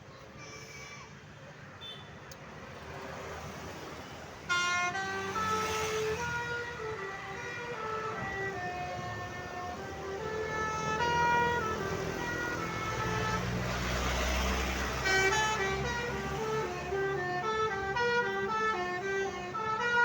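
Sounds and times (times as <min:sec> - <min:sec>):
bus passing by: 0:00.1 - 0:20.0
multi-tone bus horn tune: 0:04.4 - 0:20.0.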